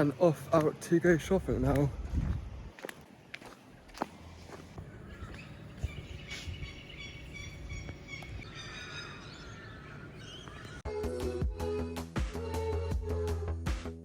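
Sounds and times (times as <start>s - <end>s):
birds calling: 2.6s - 10.9s.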